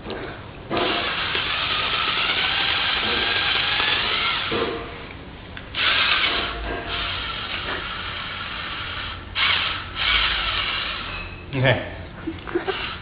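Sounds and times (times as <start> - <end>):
power drill running: 0.8 - 4.7, 5.7 - 11.2, 12.6 - 13.0.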